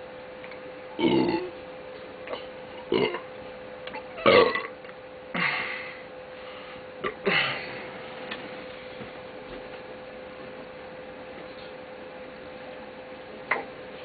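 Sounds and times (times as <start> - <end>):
faint steady hum: 0.0 - 14.0
man burping: 1.0 - 1.5, 2.9 - 3.2, 4.2 - 4.7, 7.0 - 7.8.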